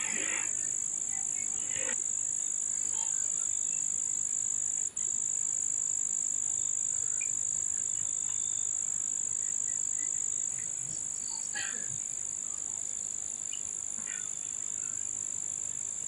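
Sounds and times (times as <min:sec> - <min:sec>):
faint frog calls: 0:13.5 - 0:15.1.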